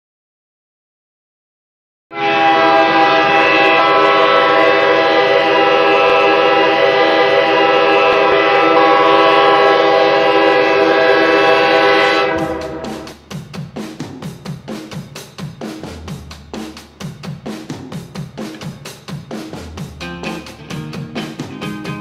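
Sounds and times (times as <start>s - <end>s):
goal horn blast: 2.1s - 13.1s
drum music: 2.4s - 22.0s.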